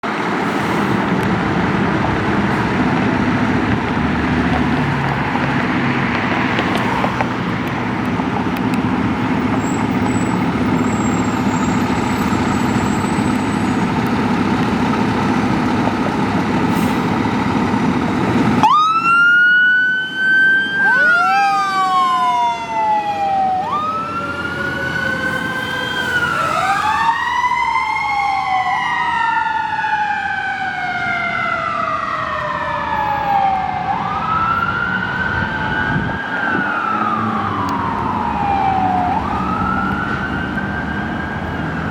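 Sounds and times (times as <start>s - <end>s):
fire truck siren wailing: 0.0s - 41.9s
loud steady rumble: 0.1s - 18.7s.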